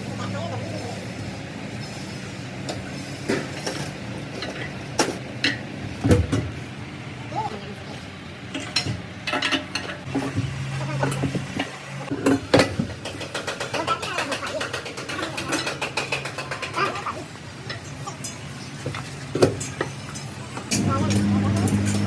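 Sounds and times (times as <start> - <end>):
low machine hum: 20.1 - 22.0.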